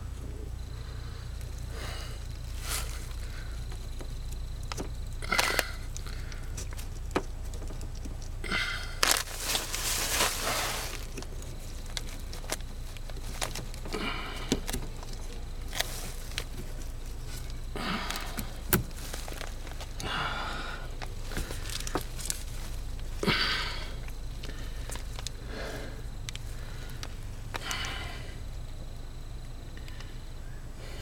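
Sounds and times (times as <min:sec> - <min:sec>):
steady low hum: 0:00.0 - 0:31.0
rustling scrape: 0:09.0 - 0:11.8.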